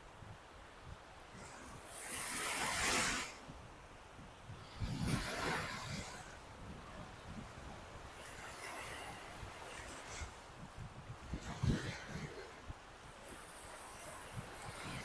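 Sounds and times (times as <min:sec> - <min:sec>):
waves breaking on a beach: 0:00.0 - 0:15.0.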